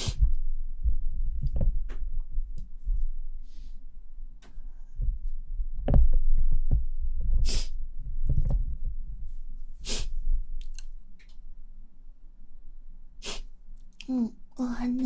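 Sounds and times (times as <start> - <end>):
thuds and rubbing on microphone: 0.1 - 3.2, 4.9 - 9.4.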